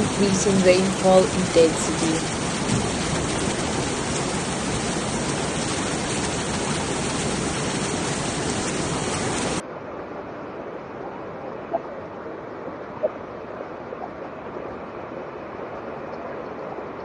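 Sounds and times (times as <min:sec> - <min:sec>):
rush of flood water: 0:00.0 - 0:09.6.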